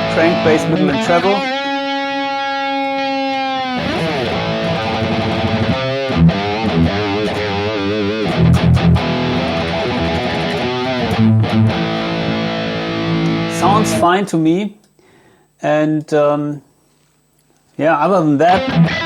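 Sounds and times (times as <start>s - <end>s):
overdriven electric guitar: 0.0s - 14.0s, 18.5s - 19.0s.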